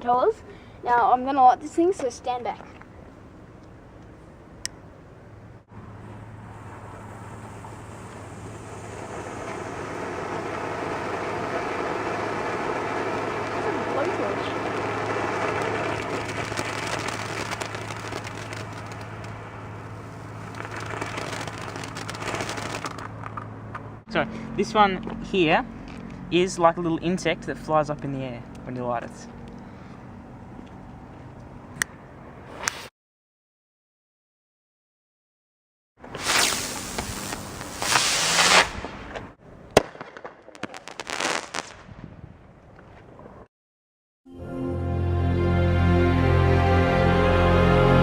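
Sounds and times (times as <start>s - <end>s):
low hum: 4.6s - 26.3s
firework hissing and crackling: 6.6s - 23.1s, 36.1s - 39.1s, 40.6s - 41.8s
hissing sprays of sparks: 36.1s - 38.8s
firework bang: 36.1s - 39.2s.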